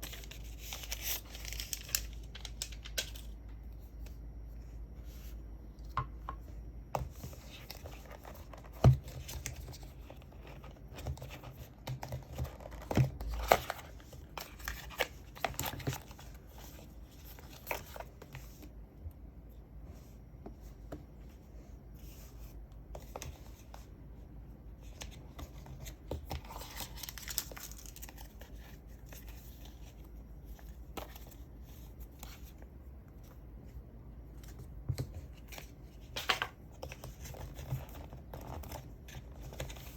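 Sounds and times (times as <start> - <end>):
packaging tearing and crinkling: 26.5 - 28.3.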